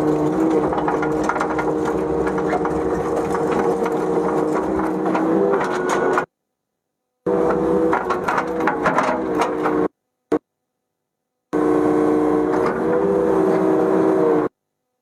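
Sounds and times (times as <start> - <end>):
excavator diesel engine running: 0.0 - 6.3, 7.3 - 9.9, 11.6 - 14.5
sharp knocks and clanks: 0.0 - 6.3, 7.3 - 9.9.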